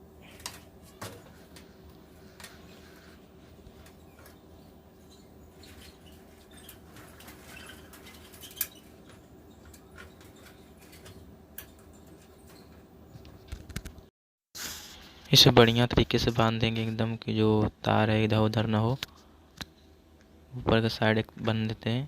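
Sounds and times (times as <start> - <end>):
faint steady hum: 0.0 - 13.9
cables scratching: 0.2 - 14.1.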